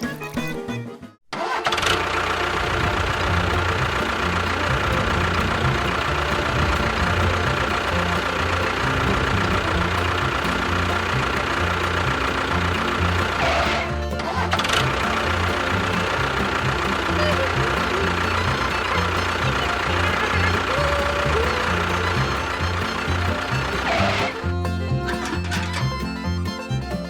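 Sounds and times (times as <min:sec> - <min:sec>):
music: 0:00.0 - 0:01.2, 0:02.8 - 0:27.0
motor running with whine: 0:02.1 - 0:26.2.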